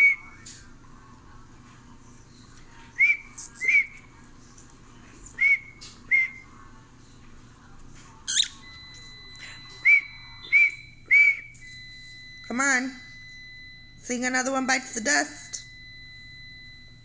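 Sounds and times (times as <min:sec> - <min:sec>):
cockatiel whistling: 0:00.0 - 0:00.4, 0:03.0 - 0:04.0, 0:05.4 - 0:06.4, 0:08.3 - 0:11.6
sharp bird chirp: 0:08.3 - 0:08.6.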